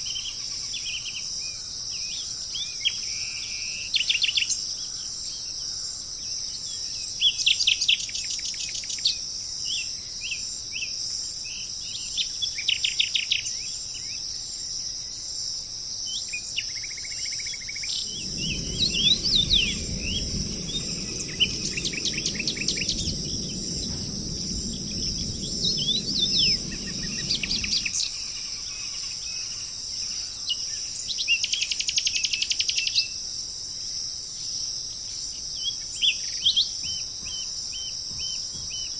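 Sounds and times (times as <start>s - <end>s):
insect chorus: 0.0s - 38.9s
songbirds trilling: 16.1s - 29.4s
low rumble: 17.9s - 28.8s.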